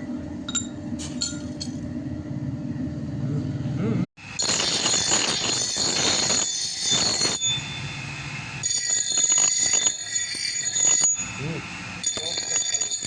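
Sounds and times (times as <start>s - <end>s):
power grinder grinding steel: 4.4s - 7.6s, 8.6s - 13.0s.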